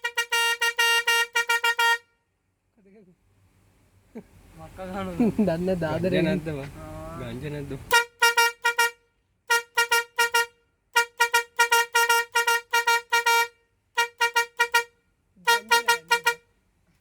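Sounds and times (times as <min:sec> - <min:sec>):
vehicle horn short beeps: 0:00.0 - 0:02.2, 0:07.9 - 0:16.5.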